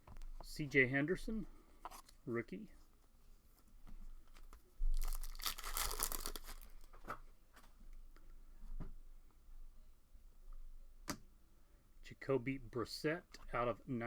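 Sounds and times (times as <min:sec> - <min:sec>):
wrapper tearing open: 0:04.9 - 0:06.9.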